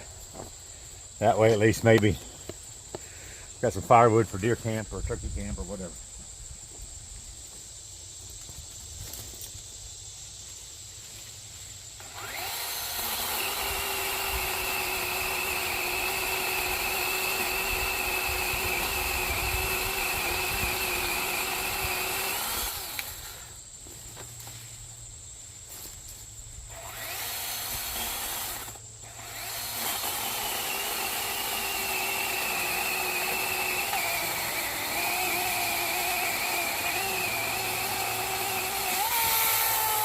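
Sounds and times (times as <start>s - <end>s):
chainsaw cutting wood: 12.0s - 23.6s, 26.7s - 40.0s.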